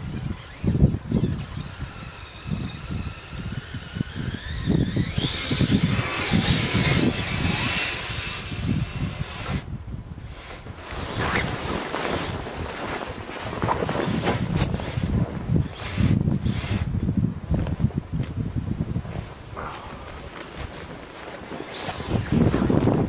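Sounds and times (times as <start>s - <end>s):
electric motors whining: 0.0s - 10.6s, 14.0s - 16.9s, 21.5s - 23.0s.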